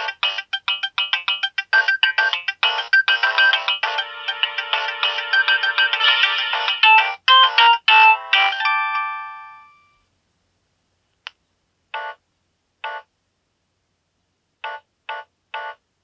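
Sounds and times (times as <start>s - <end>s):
polyphonic ringtone melody: 0.0s - 10.0s.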